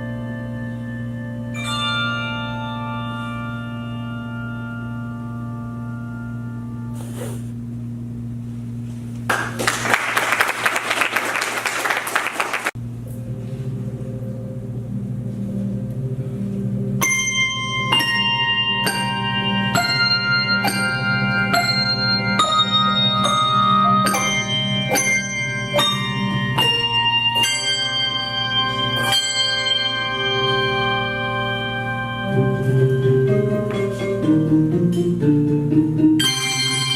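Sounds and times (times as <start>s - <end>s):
low handbells sustaining: 0.0s - 6.6s, 17.0s - 34.2s.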